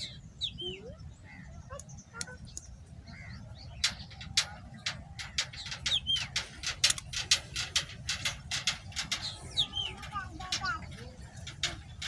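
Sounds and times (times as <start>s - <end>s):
rapid sharp clicks: 3.8s - 12.0s
high bird chirps: 9.1s - 10.2s.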